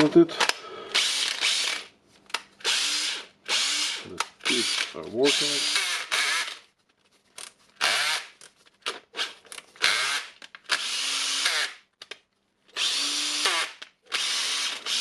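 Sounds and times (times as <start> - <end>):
cordless drill running: 1.0 - 1.9, 2.6 - 4.0, 4.6 - 6.6, 7.8 - 8.3, 9.8 - 11.8, 12.8 - 15.0.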